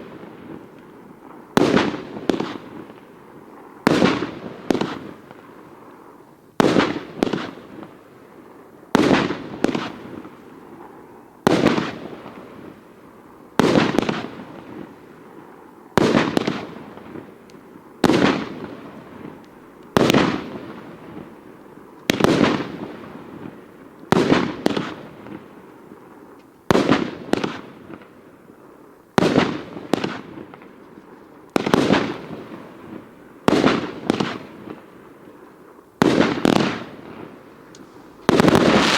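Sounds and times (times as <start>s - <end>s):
firework bangs: 0.0s - 3.0s, 3.8s - 5.4s, 16.0s - 17.4s, 18.0s - 21.4s, 22.1s - 25.5s, 31.6s - 34.8s, 36.0s - 38.9s.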